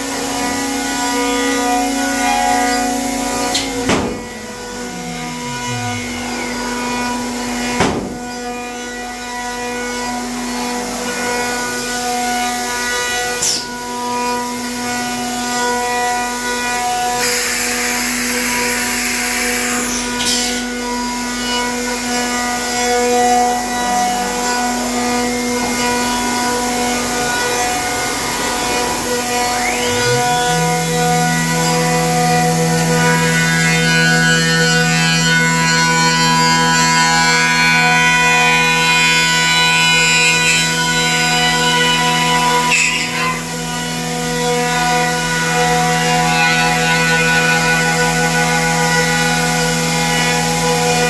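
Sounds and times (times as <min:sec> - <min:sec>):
router spindle whine: 0:00.0 - 0:51.0
wood cutting noise: 0:00.0 - 0:51.0.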